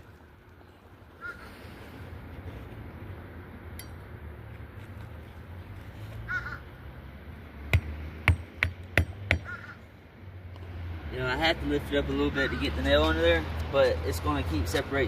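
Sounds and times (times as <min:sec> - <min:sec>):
crow cawing: 0:06.3 - 0:06.6, 0:09.4 - 0:09.8
hammer striking roof: 0:07.7 - 0:09.5.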